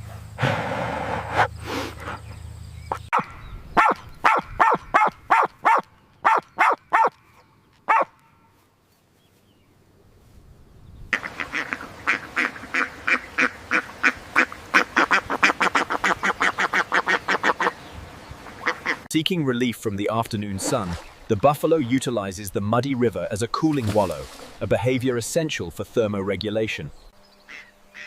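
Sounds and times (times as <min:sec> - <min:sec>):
bird honking calls: 0:02.0 - 0:08.6, 0:11.1 - 0:19.1, 0:27.3 - 0:28.0.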